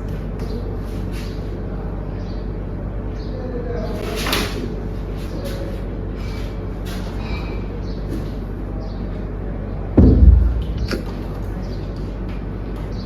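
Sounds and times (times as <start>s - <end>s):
steady low hum: 4.6s - 13.0s
loud thump: 10.0s - 11.2s.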